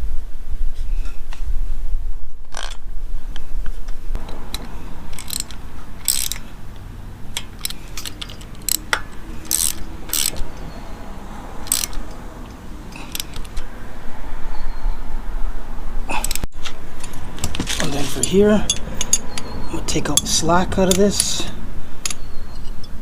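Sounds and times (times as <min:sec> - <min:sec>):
socket ratchet clicking: 0:04.2 - 0:10.7, 0:11.6 - 0:13.7.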